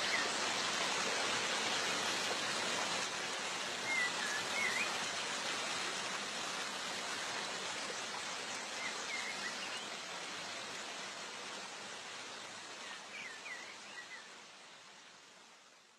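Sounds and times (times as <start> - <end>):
waterfall rushing: 0.0 - 7.8.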